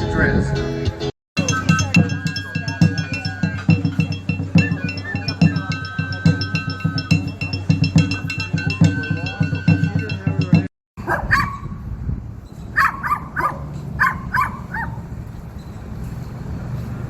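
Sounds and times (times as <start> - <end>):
high held melody notes: 0.0 - 10.7
music with low percussive beat: 0.0 - 10.7
clicking percussion: 1.4 - 10.7.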